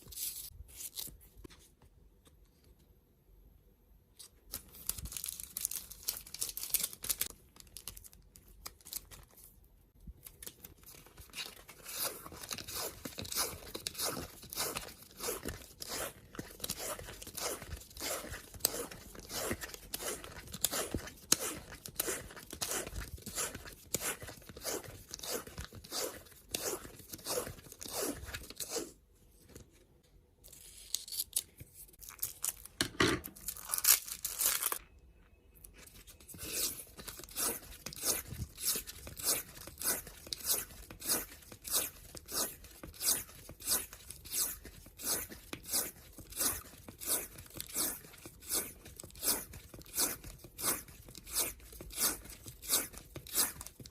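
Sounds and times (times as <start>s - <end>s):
tape crinkling: 4.2s - 9.4s, 30.5s - 34.9s.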